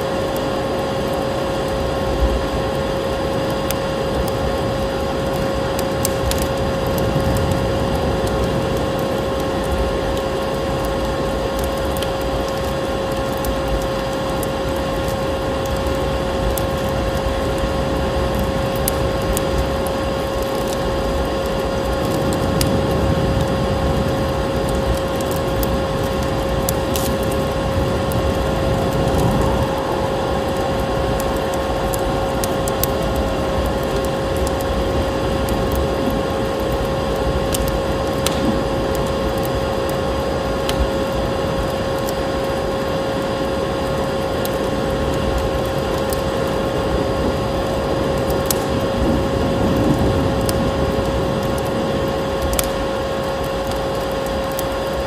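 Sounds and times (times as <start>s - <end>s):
wood fire crackling: 0.0s - 55.0s
vacuum cleaner motor whine: 12.9s - 48.2s
snowstorm wind rushing: 21.3s - 42.4s.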